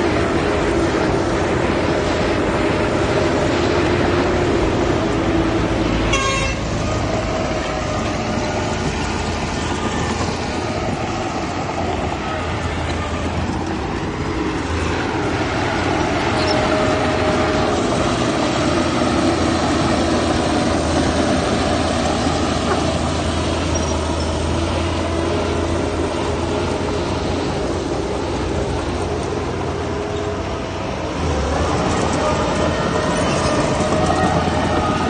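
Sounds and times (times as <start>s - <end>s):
diesel machinery engine rumble: 0.0s - 35.0s.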